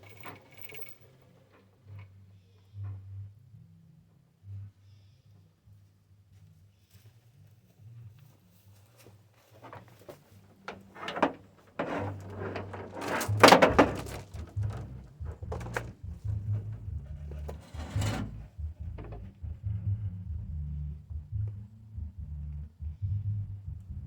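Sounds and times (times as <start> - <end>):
knocks and clattering scrapes: 9.5 - 19.5.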